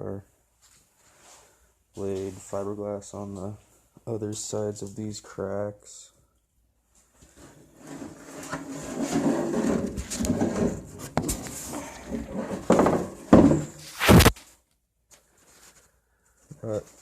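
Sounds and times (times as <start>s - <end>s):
handling noise rubbing and scraping: 7.0s - 17.0s.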